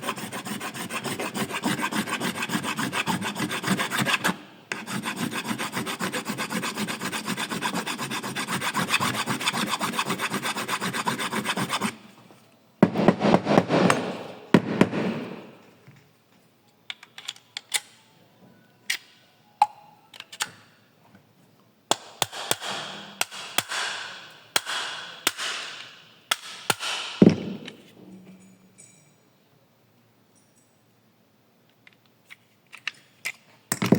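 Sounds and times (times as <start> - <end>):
hand file rasping on metal: 0.0 - 12.0.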